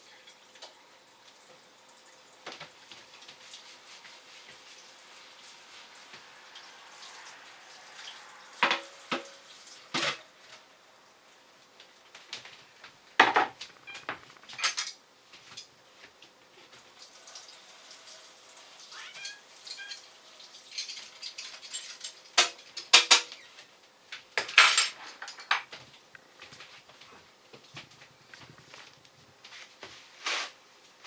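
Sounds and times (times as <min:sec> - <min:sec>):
dishes and utensils clattering: 0:08.6 - 0:10.3, 0:13.2 - 0:15.7, 0:19.0 - 0:23.4, 0:24.4 - 0:25.7.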